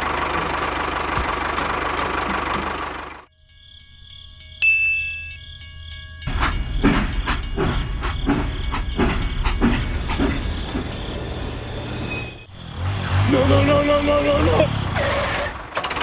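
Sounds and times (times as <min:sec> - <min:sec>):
train wheels clickety-clack: 0:06.3 - 0:11.3.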